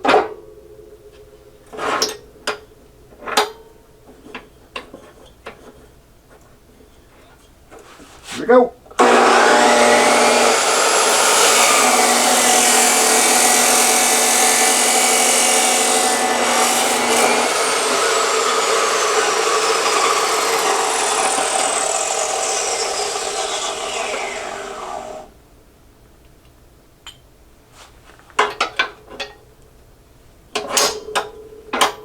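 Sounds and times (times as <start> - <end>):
chop saw cutting metal: 9.0 - 25.3.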